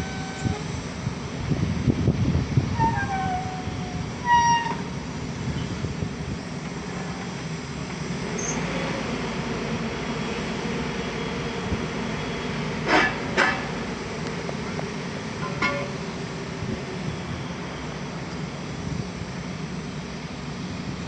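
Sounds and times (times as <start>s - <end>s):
short metallic screeches: 0.0s - 0.6s, 2.8s - 5.0s, 12.9s - 13.7s
drilling rig droning: 0.0s - 1.2s.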